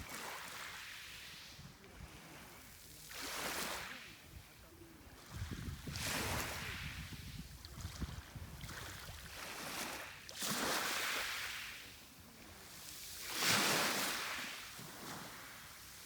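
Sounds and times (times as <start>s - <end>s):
sea waves washing onto shore: 0.0s - 16.0s
low rumble of water: 4.4s - 9.4s.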